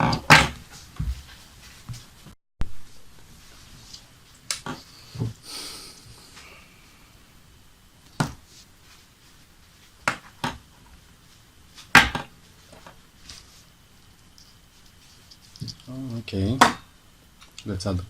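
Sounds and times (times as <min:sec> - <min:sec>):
short hiss: 0:04.9 - 0:07.0.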